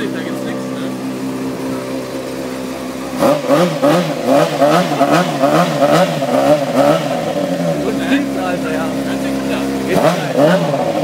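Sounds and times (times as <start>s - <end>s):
motorcycle engine revving: 0.0s - 11.0s.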